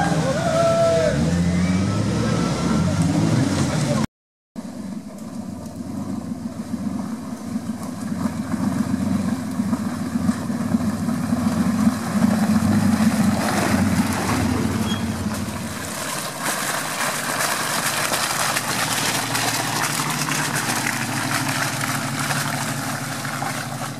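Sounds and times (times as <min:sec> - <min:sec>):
vehicle engine running: 0:00.0 - 0:23.9.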